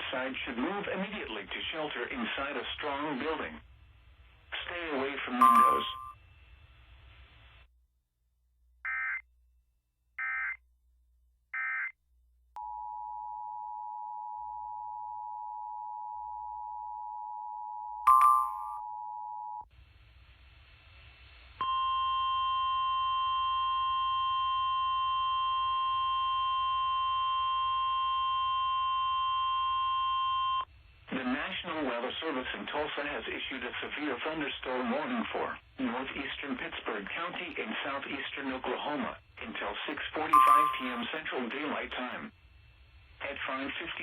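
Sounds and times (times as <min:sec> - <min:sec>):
steady weather radio alert tone: 0:04.5 - 0:06.1, 0:21.6 - 0:42.3
two-tone attention signal: 0:05.4 - 0:06.1, 0:40.4 - 0:41.1
sharp beep: 0:05.4 - 0:06.2, 0:40.4 - 0:41.2.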